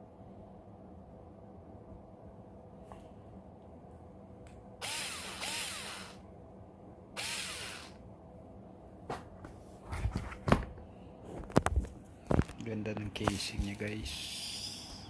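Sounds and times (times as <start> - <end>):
electric screwdriver whirring: 4.8 - 6.2, 7.2 - 8.0.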